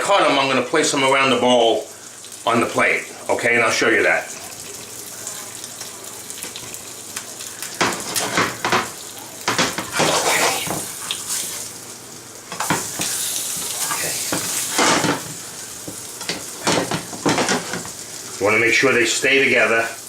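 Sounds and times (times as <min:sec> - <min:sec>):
food sizzling in a pan: 0:00.0 - 0:20.0
spatula scraping a pan: 0:09.6 - 0:11.7, 0:12.5 - 0:15.4, 0:16.2 - 0:18.0.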